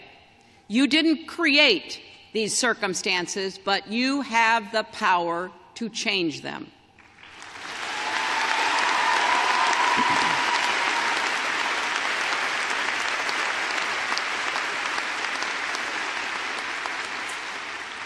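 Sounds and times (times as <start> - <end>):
audience applauding: 7.0 - 18.0
person cheering: 7.8 - 11.6.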